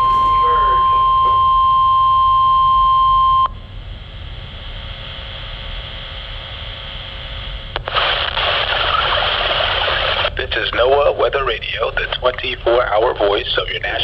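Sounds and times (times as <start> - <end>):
weather radio alarm beep: 0.0 - 3.6
radio hiss: 4.2 - 14.0.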